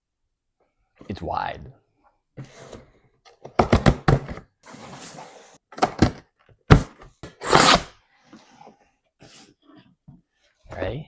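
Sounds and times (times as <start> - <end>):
cardboard scraping: 3.6 - 5.6.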